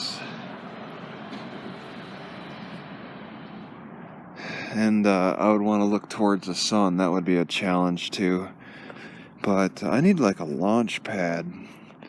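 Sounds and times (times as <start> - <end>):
outdoor background hiss and rumble: 0.0 - 12.0.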